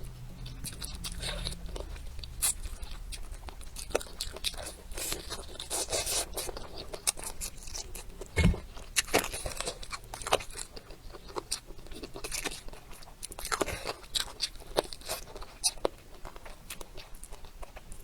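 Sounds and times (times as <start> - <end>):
person crunching and chewing: 0.0 - 18.0
dull thump: 8.4 - 8.7.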